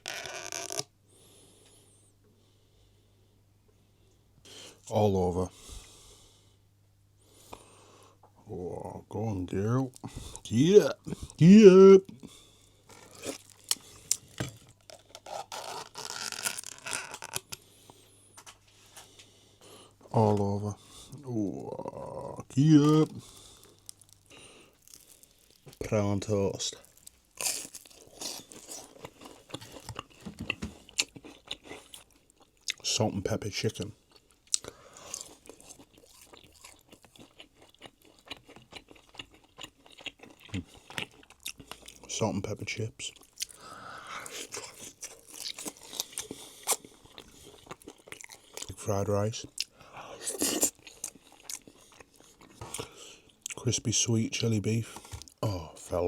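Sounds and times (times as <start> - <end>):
eating and food handling noises: 9.4 - 56.0
person chewing crispy chicken: 12.1 - 19.3, 20.9 - 33.0, 34.0 - 42.2, 43.0 - 53.8.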